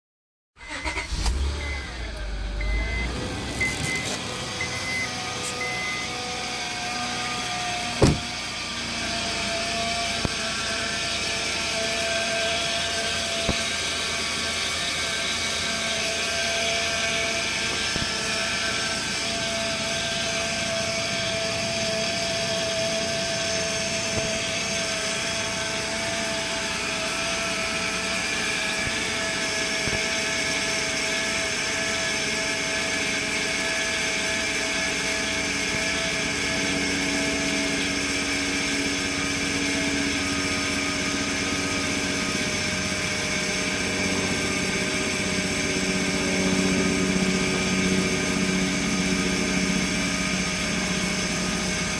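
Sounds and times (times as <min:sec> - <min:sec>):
high-pitched engine whine: 0:00.6 - 0:51.9
car engine running: 0:00.7 - 0:51.9
low hum: 0:36.2 - 0:51.9.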